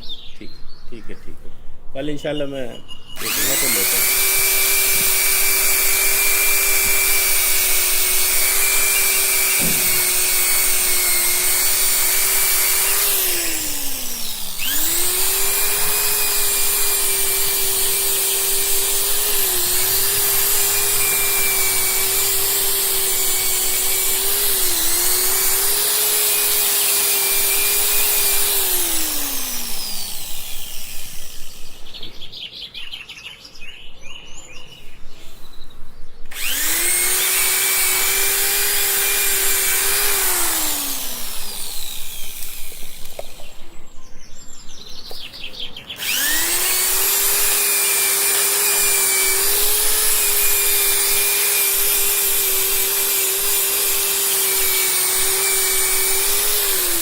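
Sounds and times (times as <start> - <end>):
power tool motor running: 3.2 - 32.0, 36.3 - 43.6, 46.0 - 57.0.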